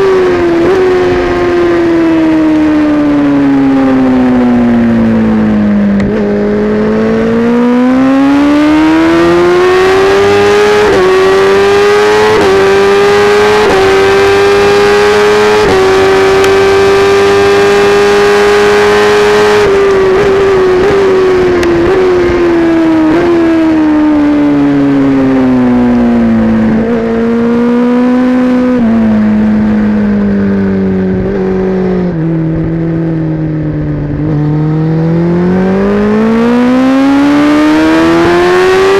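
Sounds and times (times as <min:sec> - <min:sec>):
motorcycle engine revving: 0:00.0 - 0:38.9
motorcycle gear upshifts: 0:05.0 - 0:25.4.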